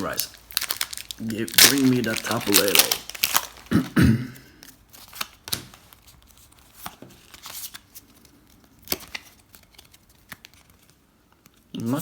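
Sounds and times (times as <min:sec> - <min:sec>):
cards rustling and clicking: 0:00.0 - 0:03.7, 0:04.7 - 0:12.0
foil wrapper crinkling and tearing: 0:00.0 - 0:03.8.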